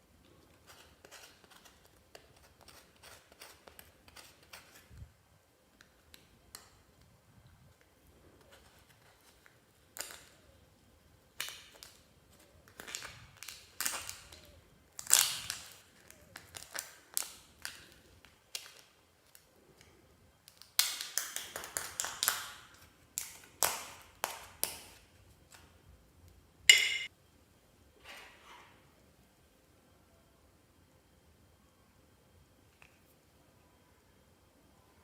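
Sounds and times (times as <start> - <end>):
slime popping and crackling: 15.0 - 17.8, 20.5 - 25.0.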